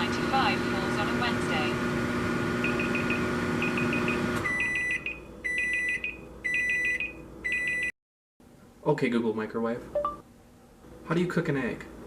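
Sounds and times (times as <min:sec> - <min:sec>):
microwave oven humming: 0:00.0 - 0:07.9.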